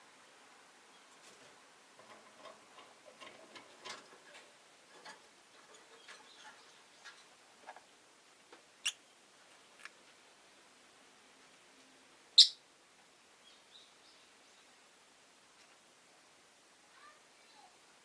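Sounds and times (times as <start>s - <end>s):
lovebirds chirping: 12.4s - 12.6s, 13.4s - 14.8s.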